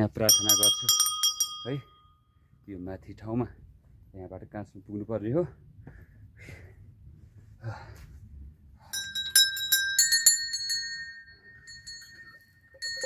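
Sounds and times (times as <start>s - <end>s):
temple bells ringing: 0.2s - 2.0s, 8.9s - 13.0s.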